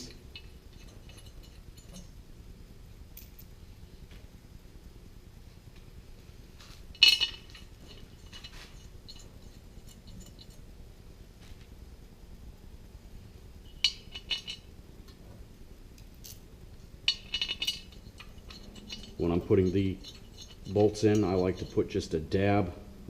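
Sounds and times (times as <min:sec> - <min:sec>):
steel bolts clinking: 0:00.0 - 0:02.2, 0:07.0 - 0:10.6, 0:13.7 - 0:15.2, 0:17.0 - 0:22.4.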